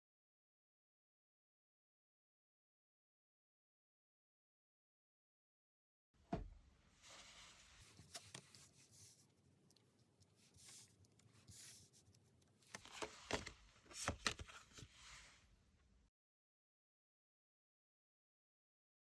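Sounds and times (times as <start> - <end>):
cards rustling and swishing: 7.0 - 9.3, 10.2 - 15.4.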